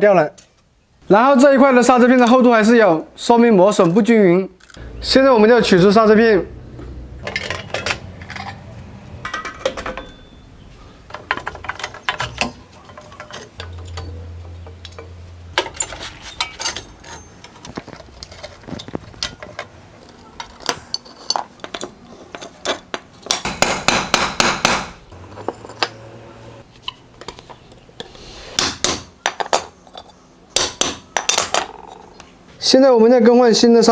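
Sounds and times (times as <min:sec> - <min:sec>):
metal tools clinking and knocking: 0:07.2 - 0:10.5, 0:11.1 - 0:24.0, 0:25.2 - 0:26.0, 0:28.6 - 0:32.1.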